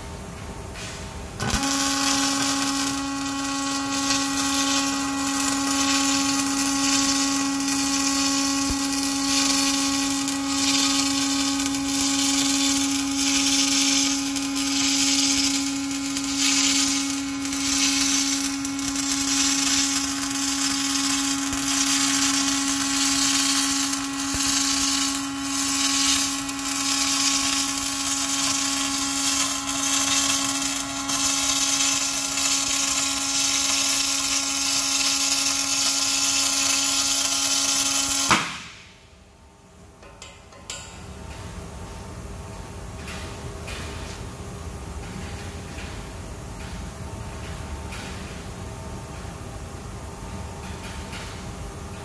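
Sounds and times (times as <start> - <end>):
electric power tool whining: 1.4 - 35.0.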